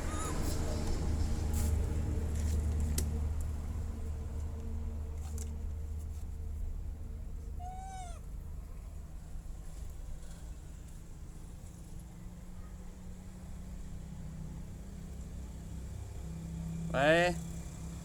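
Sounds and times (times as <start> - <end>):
baby macaque cooing: 0.0 - 0.8, 7.6 - 8.3.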